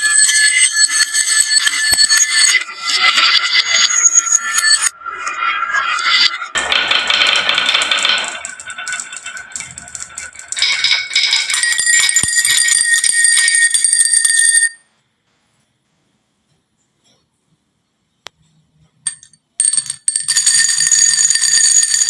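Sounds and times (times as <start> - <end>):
marbles clattering down wooden run: 6.6 - 14.8, 19.1 - 22.0.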